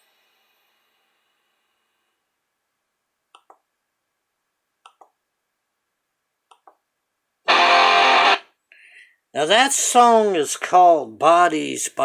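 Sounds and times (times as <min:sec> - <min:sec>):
strummed guitar chord: 0:07.5 - 0:08.4.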